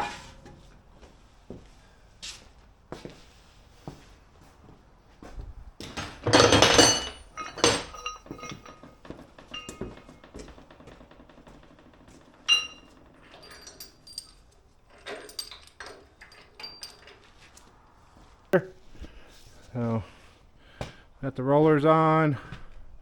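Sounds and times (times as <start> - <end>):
metal tools clanking: 5.8 - 17.8.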